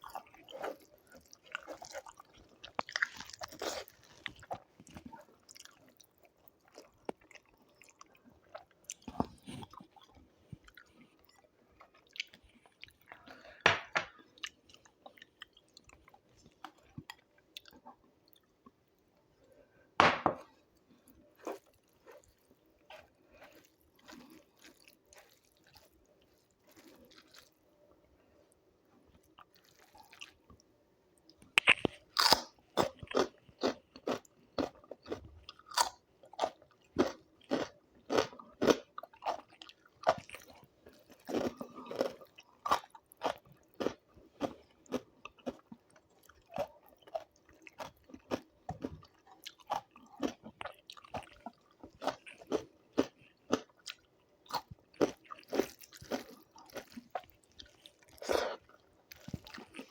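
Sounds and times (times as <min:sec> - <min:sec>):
person chewing crunchy food: 0:00.0 - 0:18.8, 0:20.4 - 0:27.7, 0:29.1 - 0:30.7, 0:31.4 - 0:59.9.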